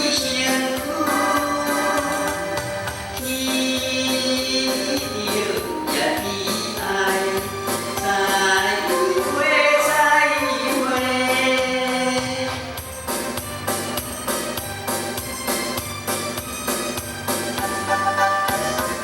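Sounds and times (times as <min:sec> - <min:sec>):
man singing: 0:00.0 - 0:12.5
backing track with drum beat: 0:00.0 - 0:19.0.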